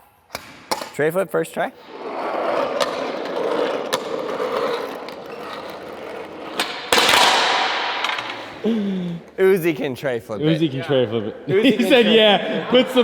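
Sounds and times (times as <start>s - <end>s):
skateboard rolling grinding rumble: 1.9s - 6.6s.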